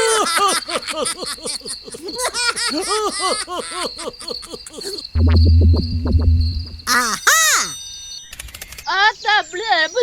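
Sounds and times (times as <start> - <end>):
high-pitched giggling: 0.0 - 5.2, 6.9 - 7.8.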